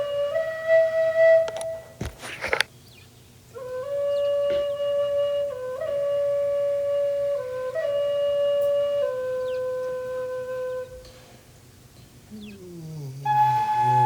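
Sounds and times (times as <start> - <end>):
drone flute long notes: 12.3 - 14.0.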